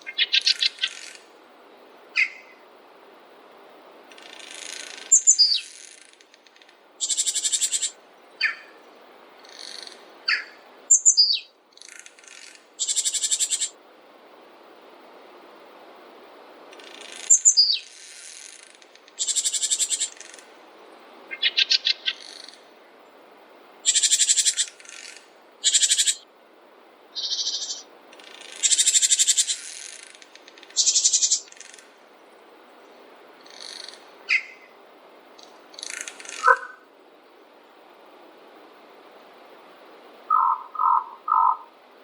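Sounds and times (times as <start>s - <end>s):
songbirds trilling: 0.0s - 1.2s, 2.2s - 2.6s, 4.1s - 5.9s, 6.5s - 8.8s, 9.4s - 13.8s, 16.8s - 17.9s, 21.3s - 22.7s, 27.2s - 29.8s, 30.4s - 31.8s, 33.4s - 34.7s, 35.4s - 36.8s, 40.3s - 41.7s
steady background hiss: 0.0s - 42.0s.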